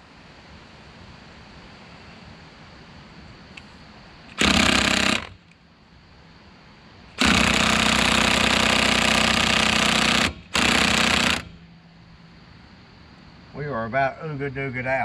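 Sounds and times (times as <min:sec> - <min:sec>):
impact wrench hammering: 0:04.4 - 0:05.4, 0:07.2 - 0:11.6.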